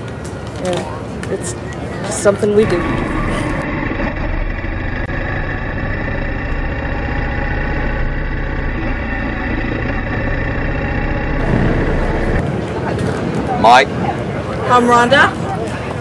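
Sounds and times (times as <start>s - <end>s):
motorcycle engines running: 2.6s - 12.5s.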